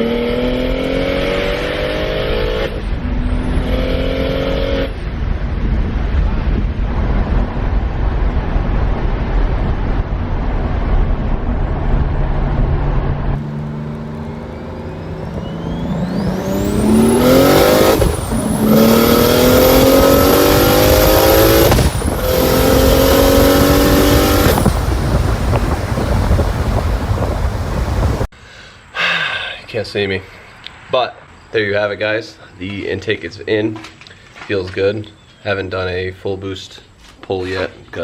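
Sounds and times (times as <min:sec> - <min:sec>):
car engine accelerating: 0:00.0 - 0:28.3
high turbo whine: 0:00.0 - 0:28.3
road noise: 0:00.0 - 0:38.0.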